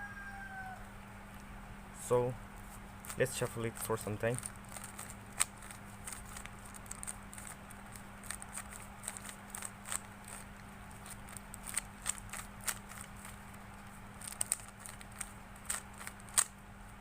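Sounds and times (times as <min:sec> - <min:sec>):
faint low hum: 0:00.0 - 0:17.0
puzzle cube layers clicking: 0:03.1 - 0:13.4, 0:14.2 - 0:16.5.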